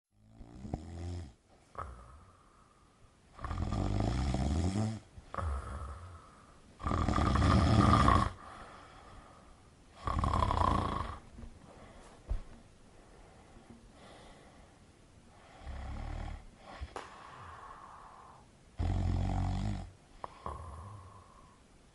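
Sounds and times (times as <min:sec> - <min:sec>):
person snoring: 0:00.3 - 0:02.7, 0:03.3 - 0:09.4, 0:10.0 - 0:11.3, 0:15.4 - 0:21.6
snort: 0:00.4 - 0:02.5, 0:03.4 - 0:08.5, 0:10.0 - 0:11.3, 0:15.4 - 0:21.5.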